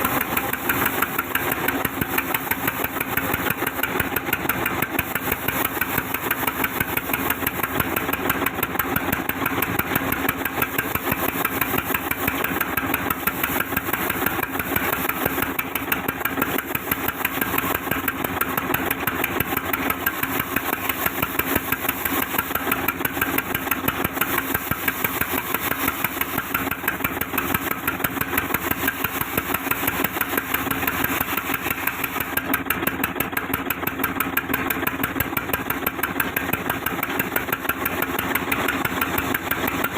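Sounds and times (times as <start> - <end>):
sawmill saw running: 0.0 - 39.9.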